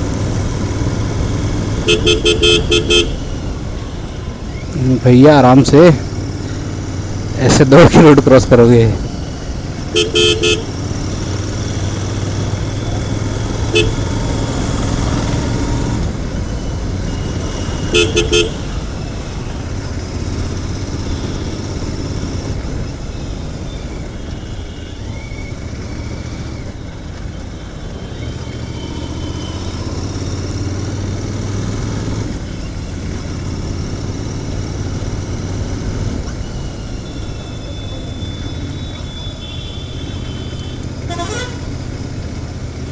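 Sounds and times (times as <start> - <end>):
motorcycle engine revving: 0.0 - 42.9
vehicle horn beeps: 1.6 - 3.7, 9.8 - 15.3, 17.0 - 19.1, 23.1 - 25.9, 36.0 - 42.2.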